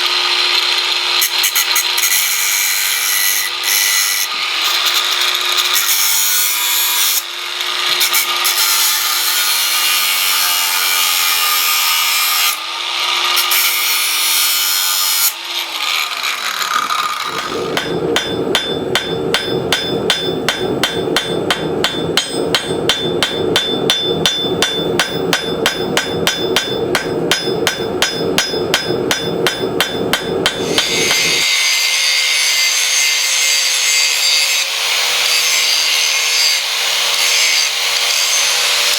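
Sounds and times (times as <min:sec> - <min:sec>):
abrasive rubbing on steel: 0:16.4 - 0:31.5
hammer strikes on steel: 0:17.3 - 0:31.5.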